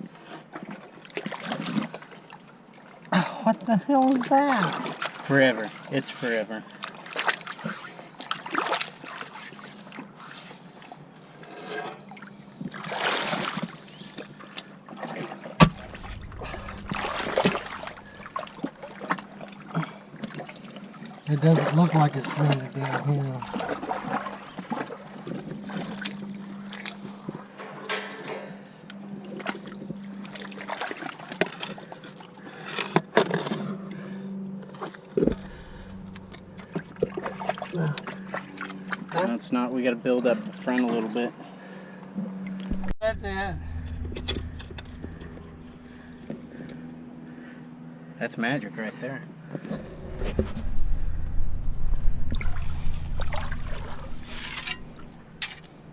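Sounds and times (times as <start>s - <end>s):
river water splashing: 0.0s - 3.1s, 3.8s - 42.9s, 43.7s - 48.2s, 48.8s - 55.9s
water swishes: 0.0s - 3.1s, 3.9s - 33.1s, 33.7s - 55.9s
steady low hum: 9.0s - 55.9s
dull thud: 15.6s - 18.8s.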